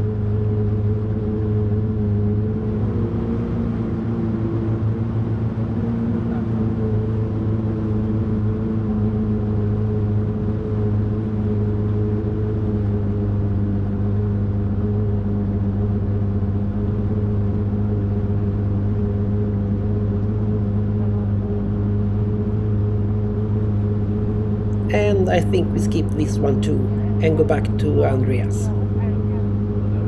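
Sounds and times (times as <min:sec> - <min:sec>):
boat engines droning: 0:24.8 - 0:29.3.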